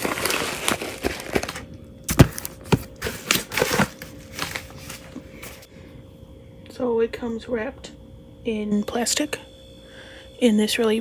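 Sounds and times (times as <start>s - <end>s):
plastic wrap crinkling: 0.0s - 5.7s.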